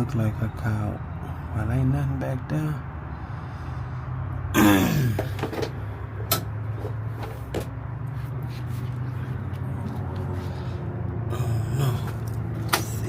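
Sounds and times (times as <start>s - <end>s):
parts clicking and knocking: 5.1s - 7.8s.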